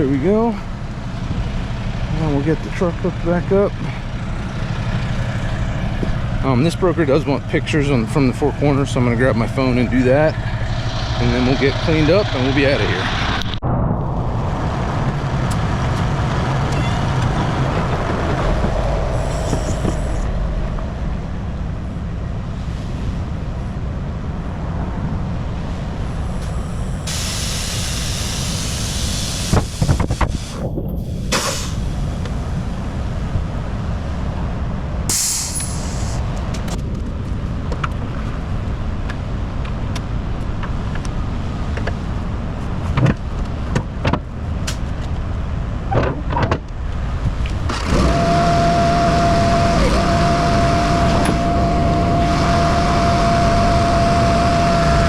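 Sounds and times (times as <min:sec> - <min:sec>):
truck engine idling: 0:00.0 - 0:13.6
air brake hissing: 0:26.3 - 0:32.2, 0:35.1 - 0:36.2.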